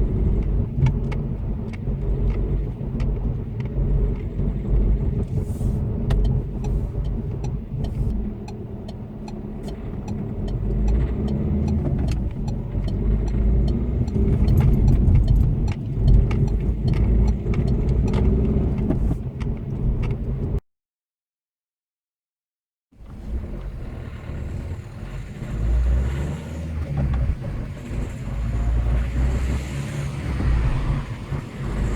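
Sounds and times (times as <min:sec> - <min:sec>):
engine ticking and clacking: 0:00.0 - 0:20.6
diesel engine running: 0:23.0 - 0:31.9.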